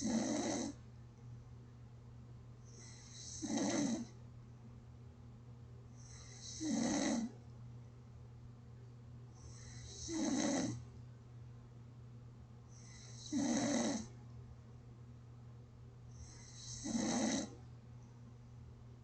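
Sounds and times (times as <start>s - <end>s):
person snoring: 0.0s - 0.8s, 2.8s - 4.1s, 6.0s - 7.3s, 9.5s - 10.8s, 12.8s - 14.1s, 16.2s - 17.6s
steady low hum: 0.0s - 19.0s.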